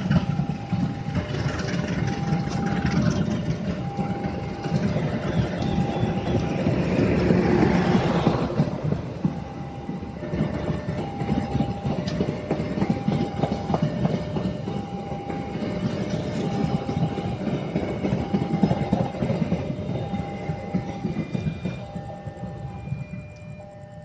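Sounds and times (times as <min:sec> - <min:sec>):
train wheels clattering: 0:00.0 - 0:24.0
two-tone signal: 0:00.1 - 0:08.6.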